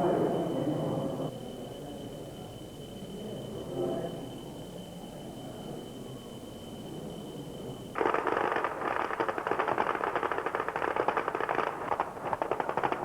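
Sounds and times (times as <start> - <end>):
firecrackers crackling: 8.0 - 13.0.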